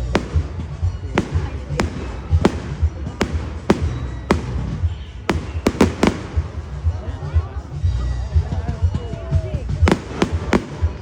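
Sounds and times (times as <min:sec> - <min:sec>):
fireworks bangs: 0:00.0 - 0:07.5, 0:09.8 - 0:11.0.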